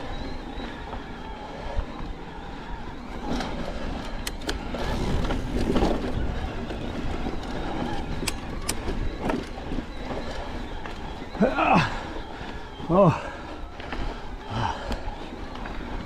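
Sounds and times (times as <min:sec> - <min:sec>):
bike tyres rumbling on dirt: 0:00.0 - 0:16.0
bike clicks and knocks: 0:03.3 - 0:11.1
bike parts rattling: 0:03.3 - 0:12.2.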